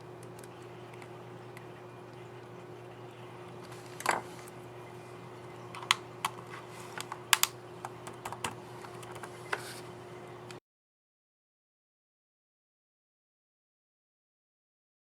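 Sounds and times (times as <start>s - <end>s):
low hum: 0.0s - 10.6s
laptop keys clicking: 0.2s - 2.2s, 5.7s - 9.4s.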